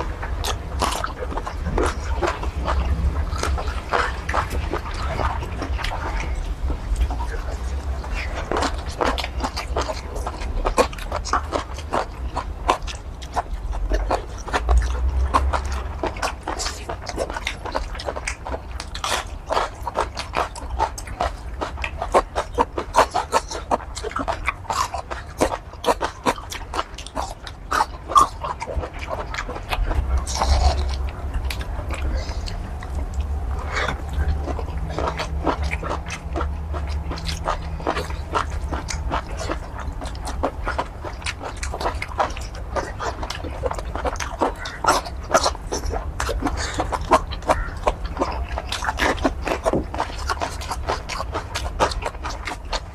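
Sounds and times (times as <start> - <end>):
chewing and biting food: 0.0 - 52.9
wet mouth clicks and smacks: 0.0 - 52.9.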